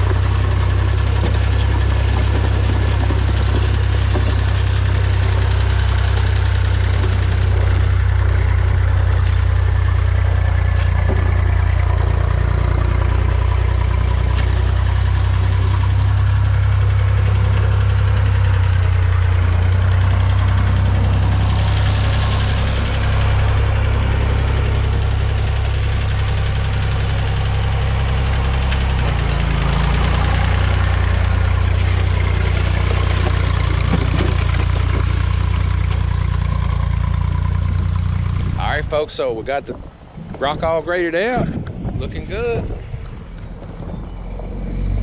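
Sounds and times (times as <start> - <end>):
tractor engine droning: 0.0 - 45.0.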